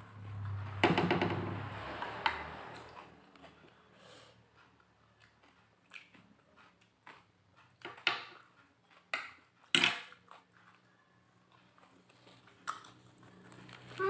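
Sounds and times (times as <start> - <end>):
chewing and crunching food: 2.8 - 14.0.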